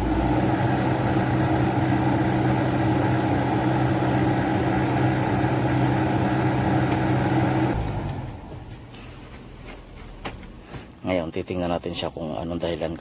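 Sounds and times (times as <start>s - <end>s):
car engine idling: 0.0s - 9.6s
car blower fan humming: 0.0s - 10.8s.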